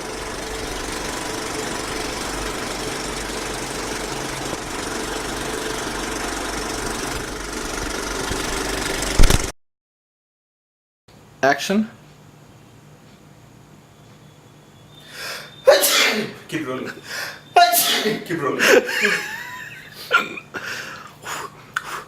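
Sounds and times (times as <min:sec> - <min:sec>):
machine-like drone: 0:00.0 - 0:09.4.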